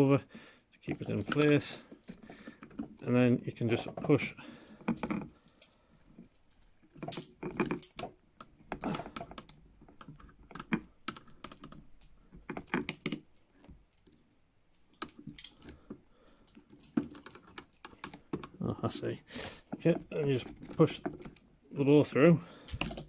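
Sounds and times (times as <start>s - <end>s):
handcuffs clicking and rattling: 0.6s - 3.1s, 4.6s - 8.1s, 8.8s - 14.2s, 14.9s - 18.6s, 19.6s - 21.5s, 22.6s - 23.0s.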